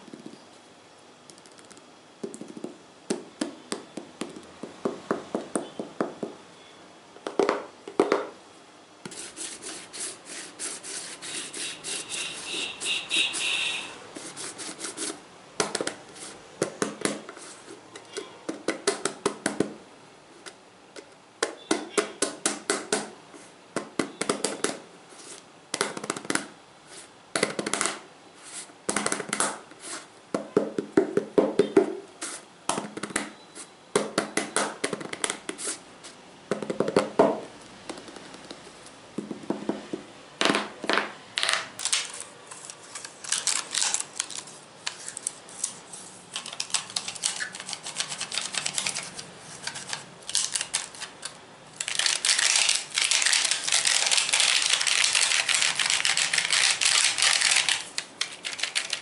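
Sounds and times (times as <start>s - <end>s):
fingertips tapping and scratching: 46.4s - 51.0s.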